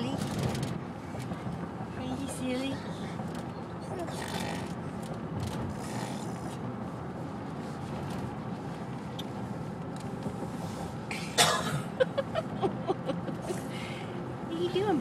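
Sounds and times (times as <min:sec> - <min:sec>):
steady background noise: 0:00.0 - 0:15.0
person fake coughing: 0:11.2 - 0:12.0.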